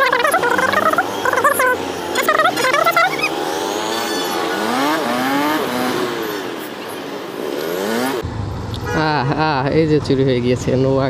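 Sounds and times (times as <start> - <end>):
motorcycle engine accelerating: 0.0 - 8.4
traffic noise: 0.0 - 11.0.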